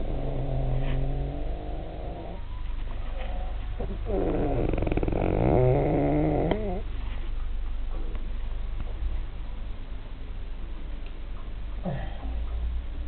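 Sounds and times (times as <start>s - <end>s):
man snoring: 0.0s - 2.4s, 4.1s - 6.8s.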